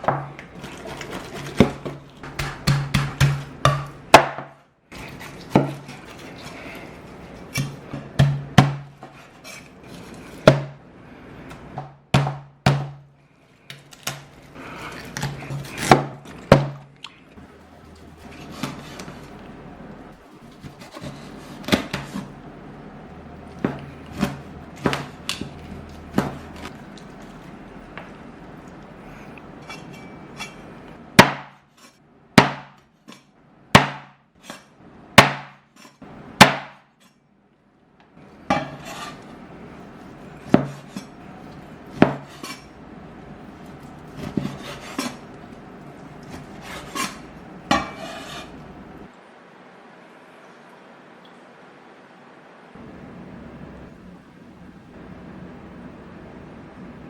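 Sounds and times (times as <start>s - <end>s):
knife chopping on wooden board: 1.6s - 4.5s, 5.5s - 5.9s, 7.6s - 9.2s, 10.4s - 10.8s, 11.7s - 13.1s, 15.1s - 16.9s, 31.2s - 31.6s, 32.4s - 32.8s, 33.8s - 34.6s, 35.2s - 36.8s, 40.5s - 41.1s, 41.9s - 42.6s.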